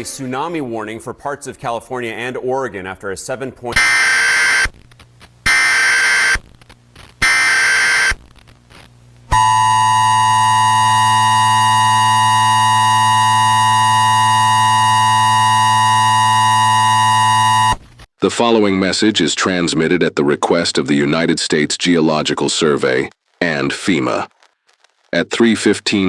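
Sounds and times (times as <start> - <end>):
harsh two-tone attention signal: 3.8 - 4.7, 5.5 - 6.4, 7.2 - 8.2, 9.3 - 17.8
screeching data bursts: 3.8 - 4.8, 5.5 - 6.4, 7.2 - 8.2.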